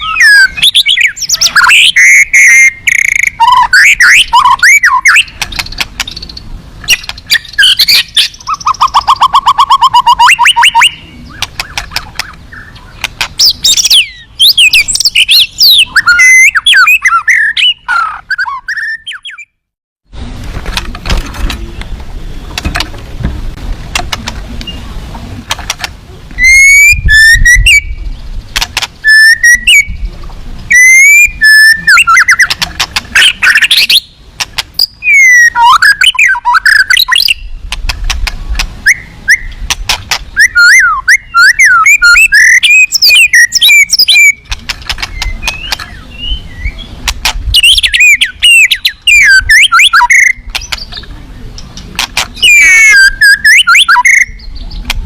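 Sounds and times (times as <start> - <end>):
bird singing whistles and trills: 0.0 - 19.6, 26.4 - 28.2, 29.0 - 30.1, 30.7 - 34.2, 34.8 - 37.6, 38.8 - 39.6, 40.4 - 44.4, 45.1 - 51.0, 52.4 - 54.8.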